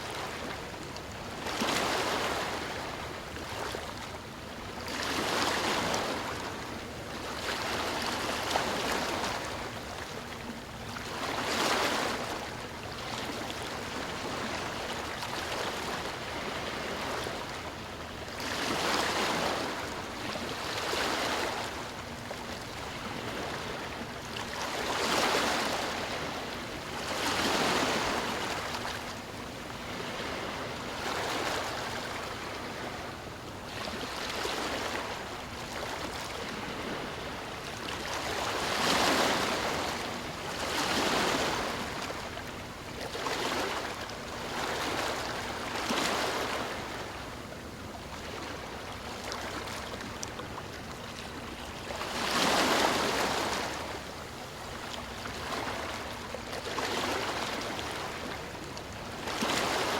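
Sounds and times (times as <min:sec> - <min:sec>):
sea waves washing in and out: 0:11.0 - 0:50.0, 0:51.1 - 0:59.9.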